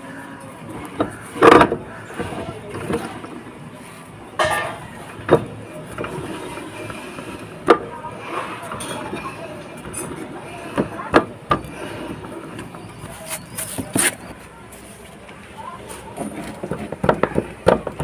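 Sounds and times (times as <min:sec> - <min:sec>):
metal parts clunking: 0:04.4 - 0:05.4
metal scraping clatters: 0:04.4 - 0:07.4.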